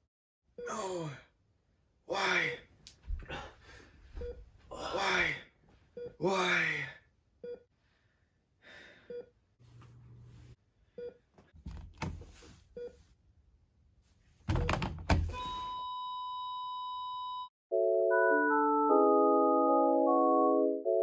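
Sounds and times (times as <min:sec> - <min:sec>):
heart monitor beeps: 0:04.2 - 0:04.4, 0:14.6 - 0:17.5
music: 0:17.7 - 0:21.0.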